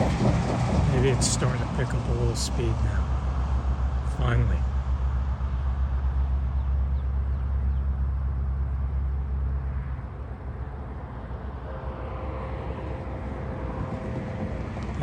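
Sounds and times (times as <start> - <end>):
vehicle engine hum: 0.0 - 15.0
distant locomotive horn: 9.6 - 15.0.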